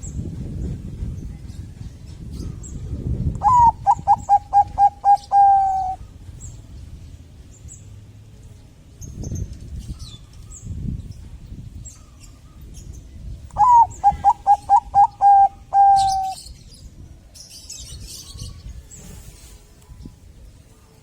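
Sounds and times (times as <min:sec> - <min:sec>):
dove cooing: 0:03.4 - 0:06.0, 0:13.6 - 0:16.4.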